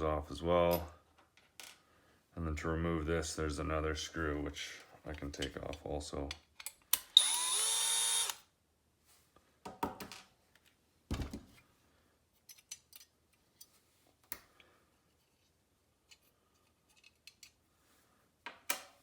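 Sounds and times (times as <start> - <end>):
small parts clicking and clinking: 12.4 - 13.7, 16.1 - 17.6.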